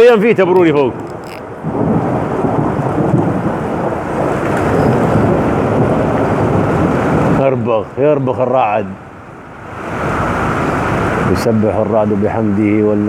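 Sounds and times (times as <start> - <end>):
thunder rumbling: 0.0 - 7.7.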